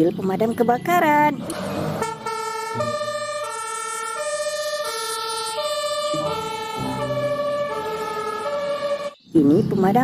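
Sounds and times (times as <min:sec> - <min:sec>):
two-tone fire engine siren: 0:01.5 - 0:09.2.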